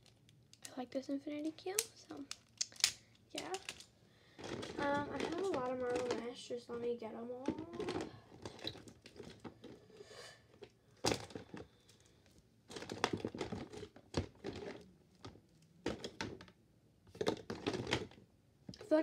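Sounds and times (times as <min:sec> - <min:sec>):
plastic toys clacking: 0:01.6 - 0:09.8, 0:12.7 - 0:16.5, 0:17.1 - 0:18.2
rustling: 0:03.3 - 0:16.5.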